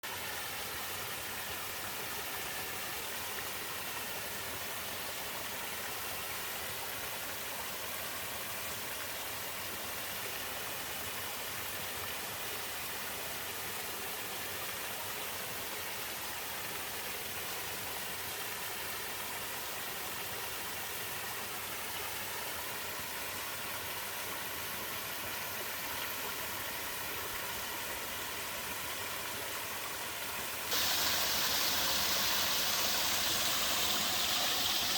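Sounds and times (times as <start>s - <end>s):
water rushing over waterfall: 29.0s - 34.9s.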